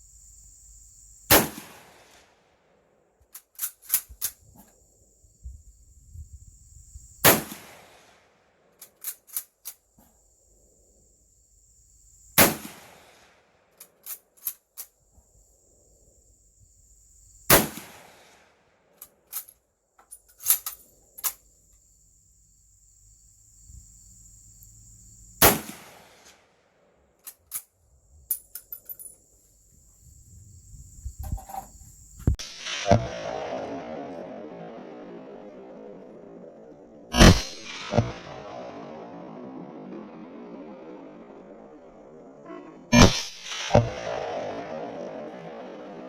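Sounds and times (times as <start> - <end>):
rifle shots: 1.3 - 2.2, 7.2 - 8.1, 12.4 - 13.3, 17.5 - 18.4, 25.4 - 26.4, 32.4 - 46.0.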